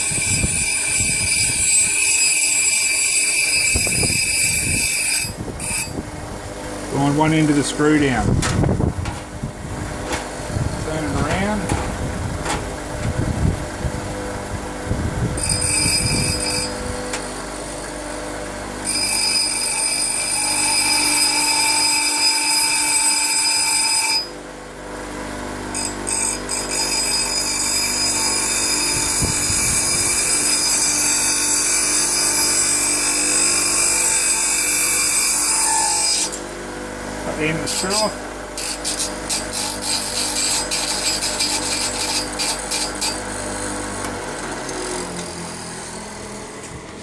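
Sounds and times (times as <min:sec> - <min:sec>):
power grinder whining: 0:00.0 - 0:06.0, 0:15.1 - 0:24.4, 0:25.3 - 0:47.0.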